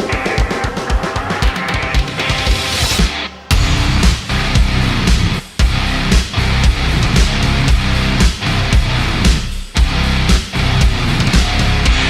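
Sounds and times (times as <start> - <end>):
drum kit beat: 0.0 - 12.0
electric guitar: 0.0 - 12.0
heavy rock music: 0.0 - 12.0.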